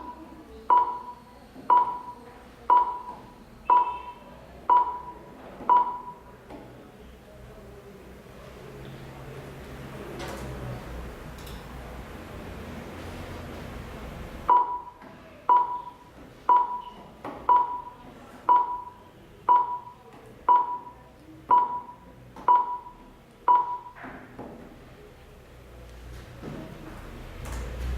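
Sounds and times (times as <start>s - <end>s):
short electronic beeps: 0.0s - 6.3s, 14.5s - 24.0s.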